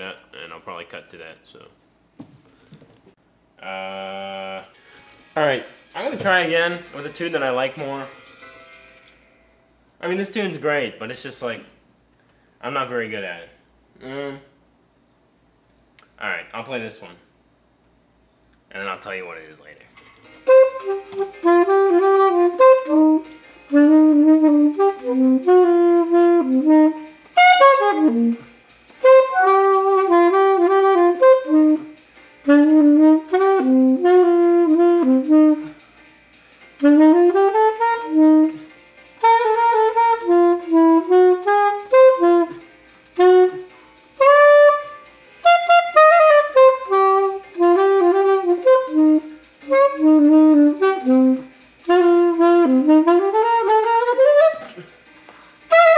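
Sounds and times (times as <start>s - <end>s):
soprano saxophone melody: 3.6s - 4.7s, 20.4s - 35.9s, 36.8s - 55.0s, 55.7s - 55.9s.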